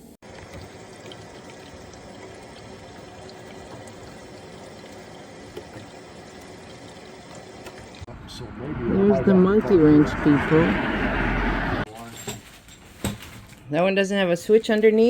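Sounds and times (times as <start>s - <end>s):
water running from a tap: 0.2s - 8.1s.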